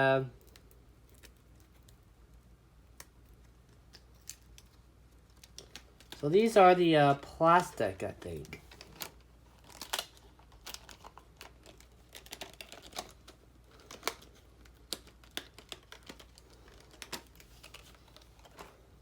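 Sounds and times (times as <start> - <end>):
plastic crinkling: 0.3 - 19.0
plastic pieces clicking: 8.3 - 18.7.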